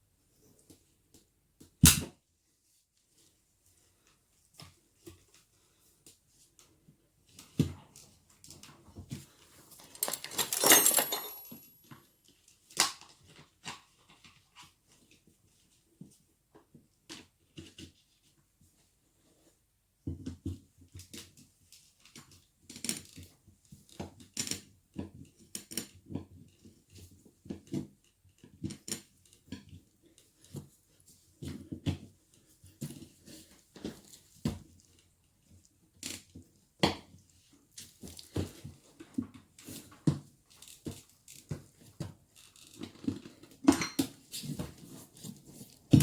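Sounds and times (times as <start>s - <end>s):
metallic clinks and knocks: 9.8s - 11.8s.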